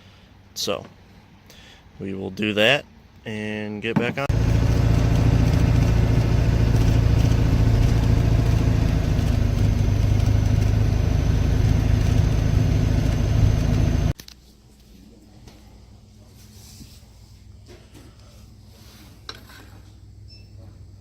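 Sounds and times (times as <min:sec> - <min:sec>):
car engine running: 0:04.3 - 0:14.2.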